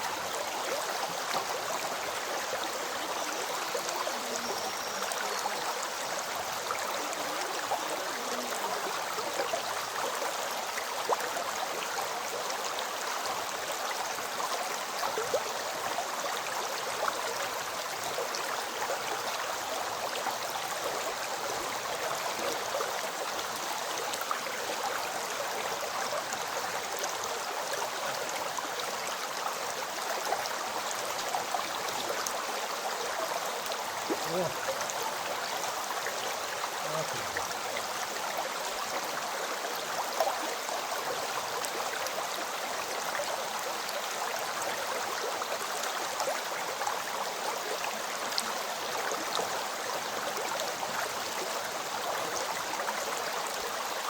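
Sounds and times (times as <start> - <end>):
river water flowing: 0.0 - 54.0
small water splashes: 33.8 - 35.1.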